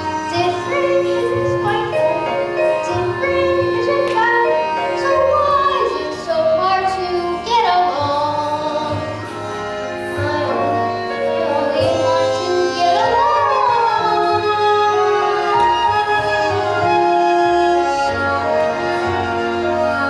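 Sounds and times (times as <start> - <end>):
instrumental accompaniment: 0.0 - 20.0
child singing: 0.3 - 2.0, 2.8 - 9.0.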